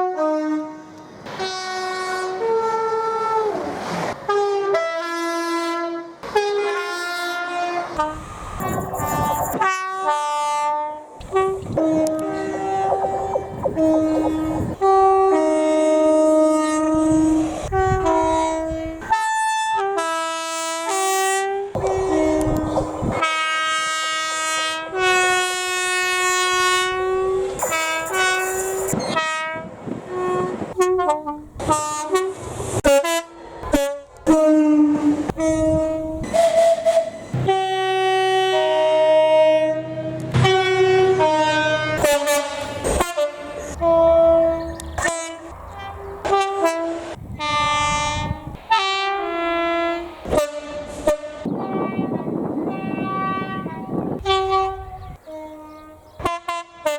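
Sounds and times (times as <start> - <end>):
two-tone train horn blasts: 0.0 - 56.9
rushing noise: 8.0 - 9.7, 31.4 - 34.3.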